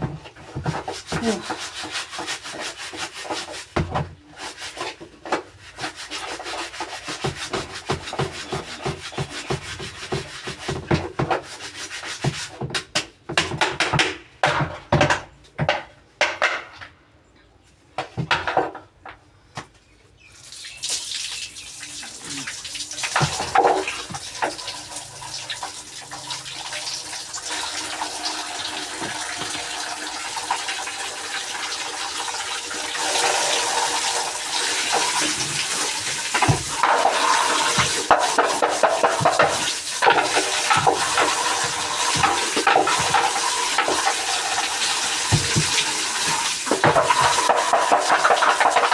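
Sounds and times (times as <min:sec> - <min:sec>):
rapid scrubbing strokes: 0:04.4 - 0:10.8
water running: 0:20.4 - 0:48.9.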